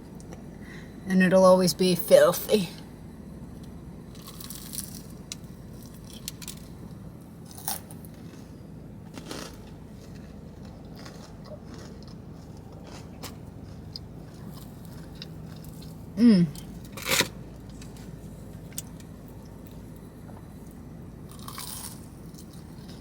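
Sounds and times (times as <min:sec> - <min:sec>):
low steady hum: 0:00.0 - 0:23.0
person chewing: 0:04.2 - 0:06.7, 0:07.5 - 0:23.0.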